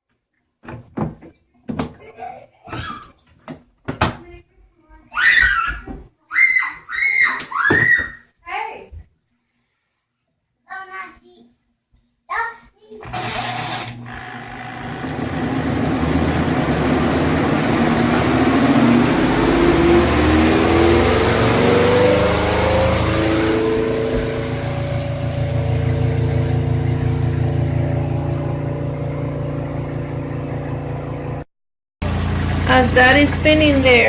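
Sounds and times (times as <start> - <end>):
spin dryer motor whine: 13.0 - 31.4, 32.0 - 34.0
low hum: 15.0 - 31.5.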